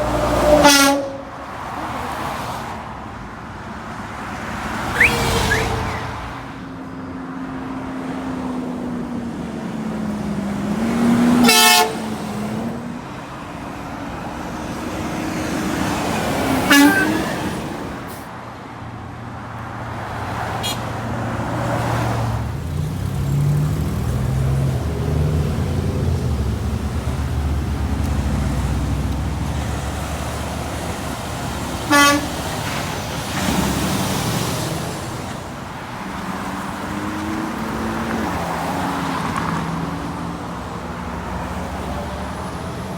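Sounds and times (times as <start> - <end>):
truck horn blasts: 0.0 - 1.7, 4.9 - 6.2, 10.9 - 12.6, 16.4 - 17.8, 20.6 - 21.0, 31.7 - 33.0
road traffic passing: 0.0 - 42.9.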